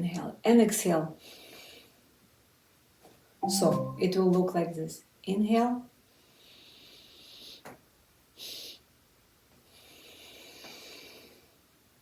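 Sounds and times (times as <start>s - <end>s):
sharp sniff of breath: 9.8s - 11.5s.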